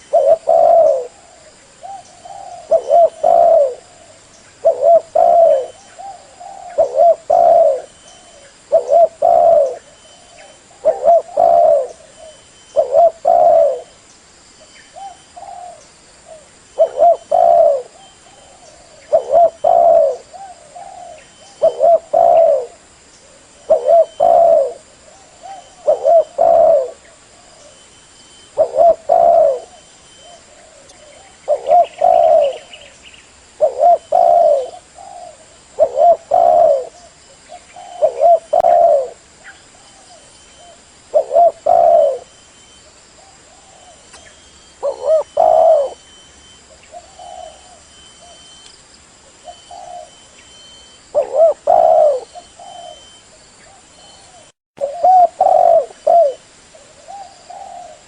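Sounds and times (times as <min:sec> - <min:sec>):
dove cooing: 0:00.0 - 0:14.0, 0:14.9 - 0:27.9, 0:28.5 - 0:33.0, 0:33.6 - 0:42.4, 0:43.2 - 0:48.6, 0:49.3 - 0:58.0.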